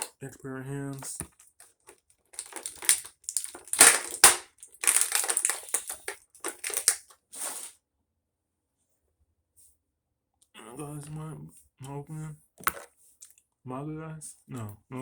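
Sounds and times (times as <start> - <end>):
plastic packaging crinkling: 0.9 - 7.7.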